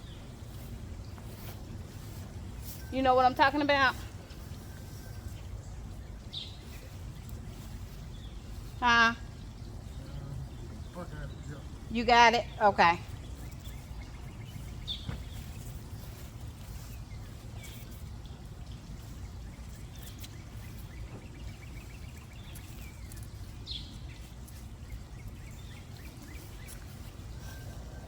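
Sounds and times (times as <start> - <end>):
low outdoor rumble: 0.0 - 28.0
bird chirps: 2.6 - 18.1.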